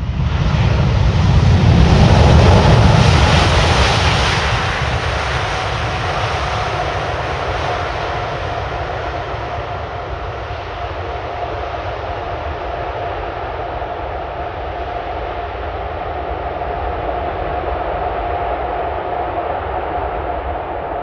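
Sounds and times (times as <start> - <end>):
jet engines roaring: 0.0 - 21.0.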